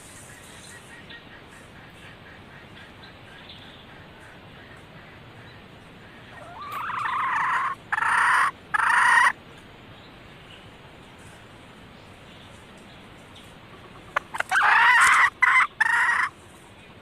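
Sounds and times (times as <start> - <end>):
junglefowl hen calling: 0.2 - 9.4, 13.7 - 16.4.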